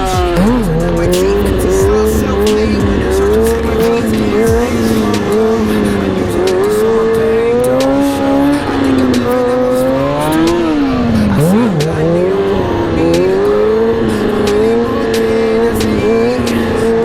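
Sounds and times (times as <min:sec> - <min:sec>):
motorcycle engine revving: 0:00.0 - 0:17.0.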